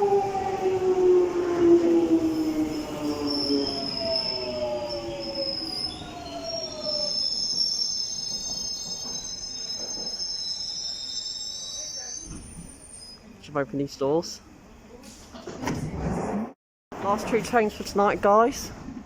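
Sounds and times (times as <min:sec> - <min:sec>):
train brakes squealing: 0:02.4 - 0:13.3.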